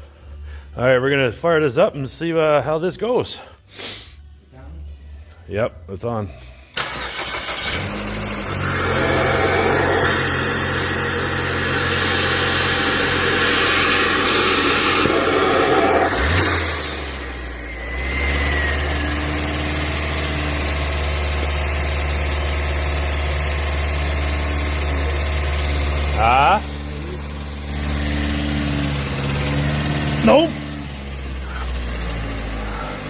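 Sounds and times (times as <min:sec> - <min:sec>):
car engine idling: 0:06.7 - 0:33.0.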